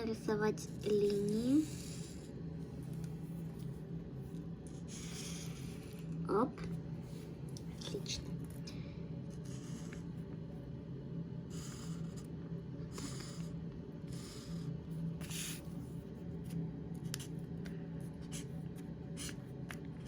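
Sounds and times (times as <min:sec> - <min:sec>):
steady low hum: 0:00.0 - 0:20.0
marker scratching on paper: 0:04.7 - 0:06.1, 0:15.2 - 0:15.7, 0:18.0 - 0:19.4.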